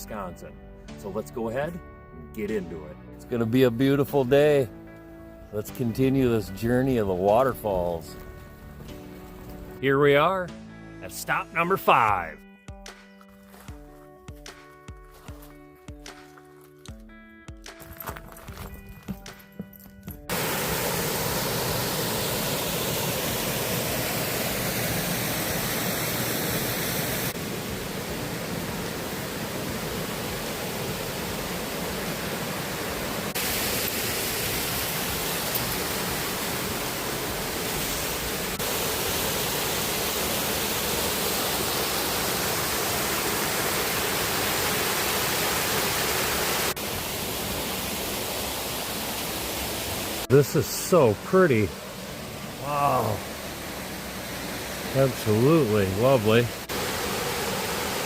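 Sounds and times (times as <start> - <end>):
waterfall roaring: 20.3 - 58.0.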